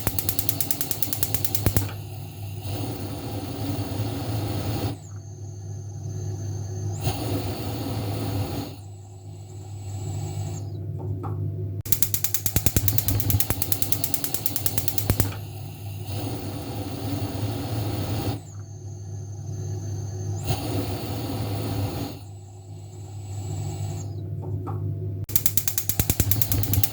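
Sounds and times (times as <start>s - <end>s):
fast ratcheting clicks: 0.0s - 2.1s, 11.9s - 15.4s, 25.3s - 26.9s.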